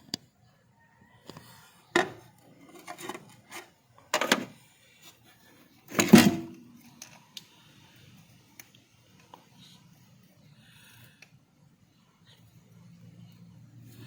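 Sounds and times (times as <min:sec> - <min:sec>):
hard objects clattering: 0:05.9 - 0:06.7.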